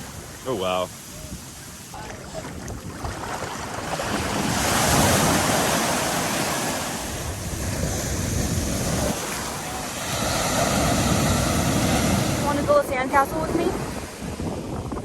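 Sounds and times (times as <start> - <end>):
ocean surf breaking: 0.0 - 15.0
wind buffeting microphone: 0.0 - 15.0.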